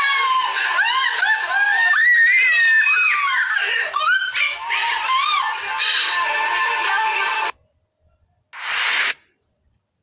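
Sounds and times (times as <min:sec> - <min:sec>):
hiss-like noise burst: 0:08.6 - 0:09.2.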